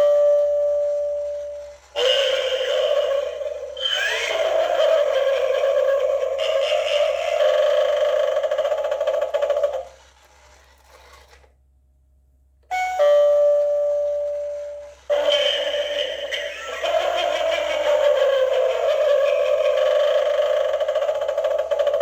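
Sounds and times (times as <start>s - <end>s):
spooky doorbell sound effect: 0.0s - 7.6s, 12.7s - 20.2s.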